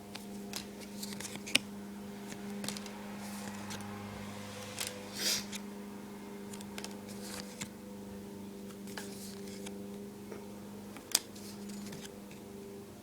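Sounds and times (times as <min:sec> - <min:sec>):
low electrical hum: 0:00.0 - 0:13.0
trading cards sliding: 0:00.1 - 0:05.6, 0:06.5 - 0:07.7, 0:08.7 - 0:09.8, 0:11.0 - 0:12.4.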